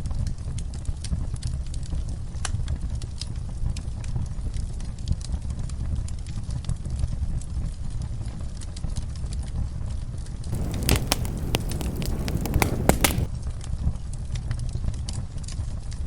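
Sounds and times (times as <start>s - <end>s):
wood fire crackling: 10.5s - 13.3s.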